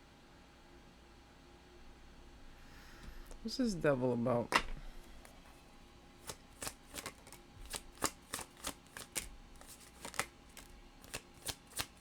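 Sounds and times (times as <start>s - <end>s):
cards being shuffled: 6.2s - 12.0s.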